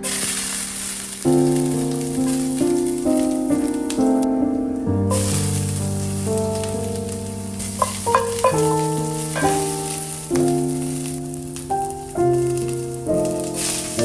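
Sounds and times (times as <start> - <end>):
food sizzling in a pan: 0.0 - 14.0
held keyboard notes music: 0.0 - 14.0.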